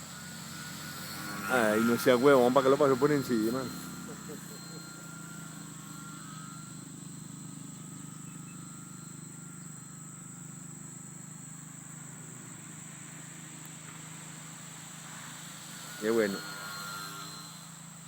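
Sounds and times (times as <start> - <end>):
low hum: 0.0 - 12.6
insect chirring: 0.0 - 17.7.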